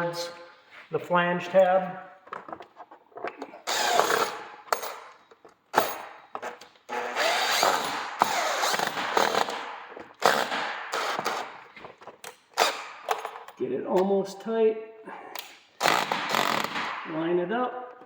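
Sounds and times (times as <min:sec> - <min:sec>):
cordless drill whining: 0:03.6 - 0:04.5, 0:06.9 - 0:09.4.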